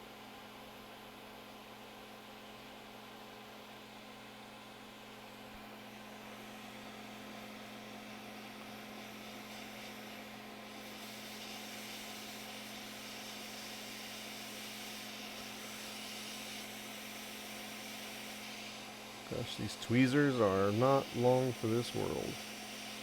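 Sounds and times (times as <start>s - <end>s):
fume extractor fan hum: 0.0s - 23.0s
hot air station hissing: 6.0s - 23.0s.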